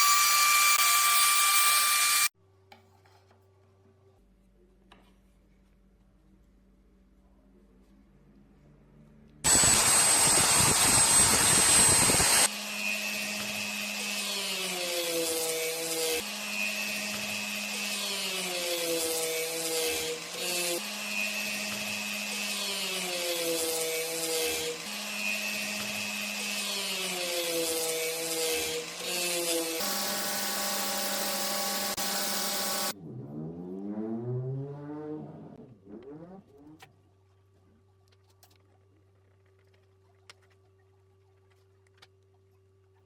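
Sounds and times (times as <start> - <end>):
power tool grinding steel blade: 0.0 - 2.3, 9.5 - 33.0.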